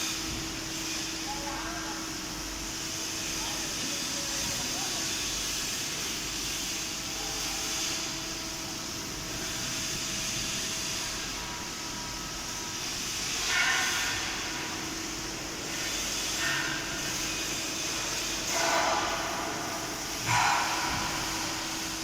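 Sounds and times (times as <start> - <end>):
loud hissing burst: 6.7 - 22.0.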